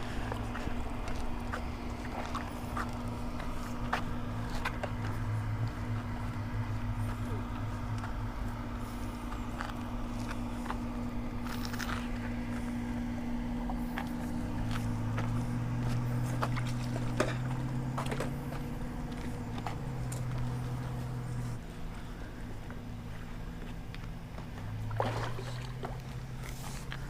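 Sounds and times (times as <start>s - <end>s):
footsteps: 0.0s - 12.9s, 13.6s - 27.0s
low motor hum: 0.0s - 27.0s.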